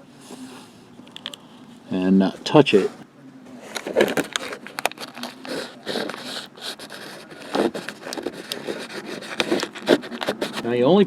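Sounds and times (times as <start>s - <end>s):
foil packet crinkling: 3.6s - 10.7s.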